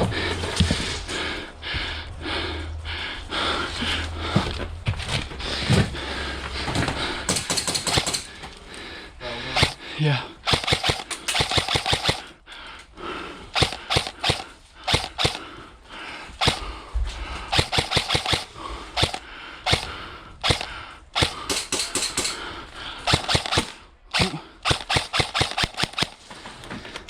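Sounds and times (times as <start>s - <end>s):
airsoft guns firing: 7.3s - 8.4s, 9.6s - 9.8s, 10.4s - 12.4s, 13.6s - 15.5s, 16.4s - 16.7s, 17.5s - 26.2s.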